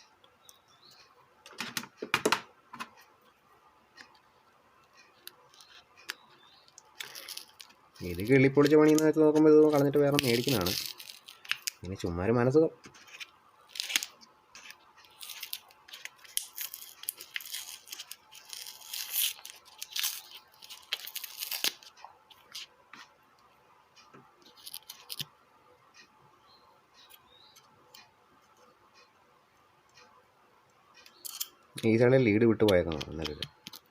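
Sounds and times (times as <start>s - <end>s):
scraping and clicking hand work: 5.0s - 11.8s, 32.6s - 33.9s.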